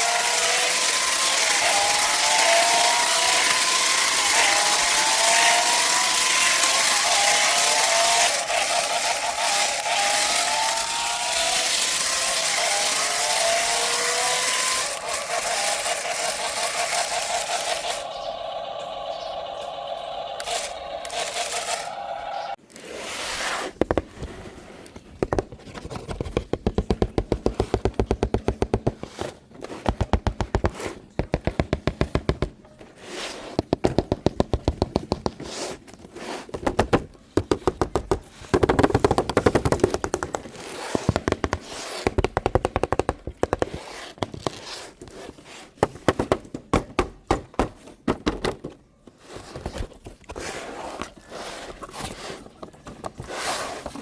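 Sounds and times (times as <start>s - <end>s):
toy mechanism clicking: 0.0s - 22.2s.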